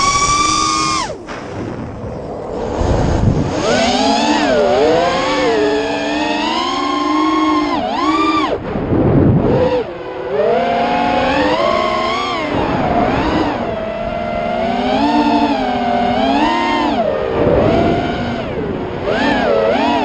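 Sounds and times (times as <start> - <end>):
wind rush: 0.0 - 6.6, 8.4 - 15.0, 17.0 - 19.5
drone motors whining: 0.0 - 20.0.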